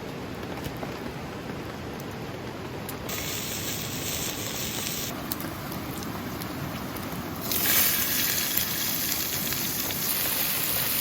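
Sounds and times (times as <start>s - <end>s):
fire crackling: 0.0s - 11.0s
loud hiss: 3.1s - 5.2s.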